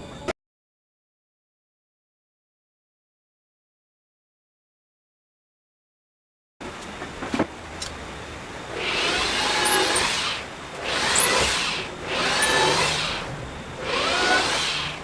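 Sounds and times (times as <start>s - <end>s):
power tool working wood: 8.7s - 15.0s.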